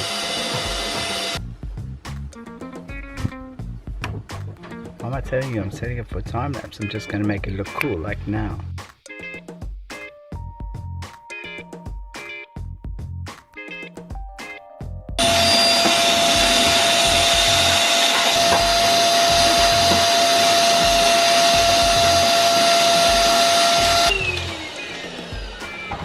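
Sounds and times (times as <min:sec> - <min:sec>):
vacuum cleaner running: 0:00.0 - 0:01.4, 0:15.2 - 0:26.0
vacuum cleaner switch: 0:15.2 - 0:26.0.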